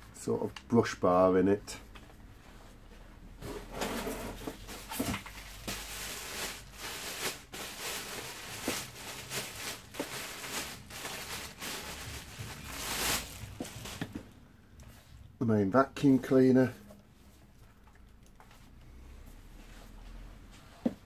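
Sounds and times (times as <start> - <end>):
packaging rustling: 4.5 - 14.4.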